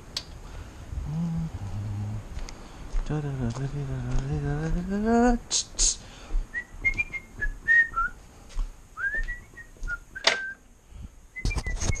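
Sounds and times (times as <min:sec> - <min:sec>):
person whistling a tune: 0:06.5 - 0:08.2, 0:09.0 - 0:10.6, 0:11.3 - 0:12.0.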